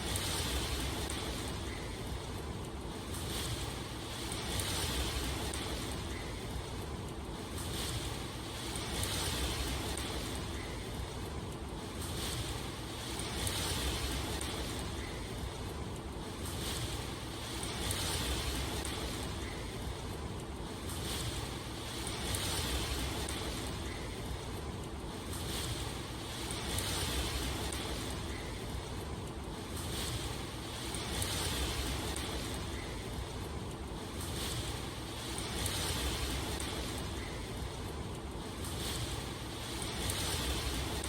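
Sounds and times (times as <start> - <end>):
steady rain hiss: 0.0 - 41.0.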